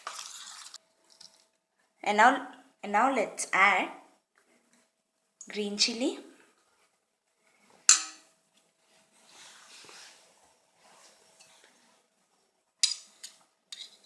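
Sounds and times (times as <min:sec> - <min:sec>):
soft rustling: 0:08.5 - 0:12.6.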